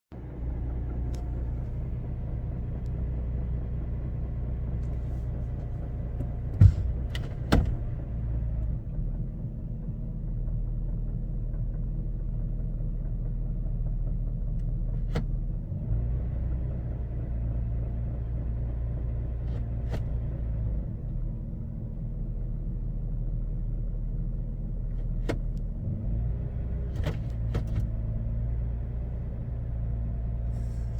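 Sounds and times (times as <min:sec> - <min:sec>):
truck engine running: 0:00.1 - 0:30.9
sharp engine knocks: 0:04.8 - 0:08.2, 0:26.8 - 0:28.0.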